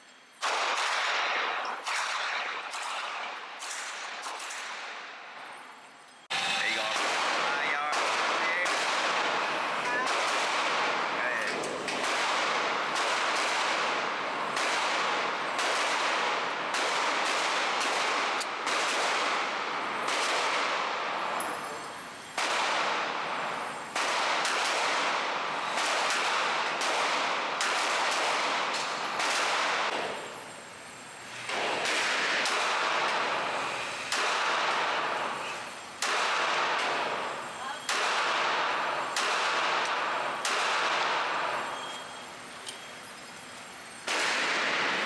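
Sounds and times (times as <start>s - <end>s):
handgun shots with echo: 0.4s - 5.0s, 6.6s - 19.4s, 20.0s - 20.8s, 24.0s - 30.2s, 31.5s - 33.4s, 34.1s - 37.2s, 37.8s - 42.0s, 44.1s - 45.0s.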